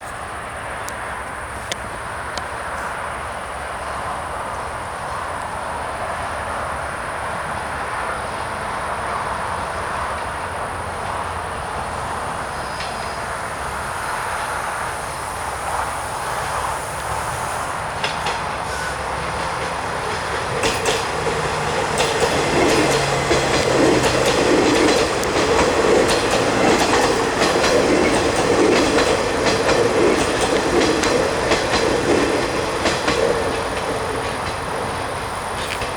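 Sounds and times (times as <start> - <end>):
metro train running on track: 0.0 - 35.9
wheels clicking over rail joints: 17.9 - 35.9.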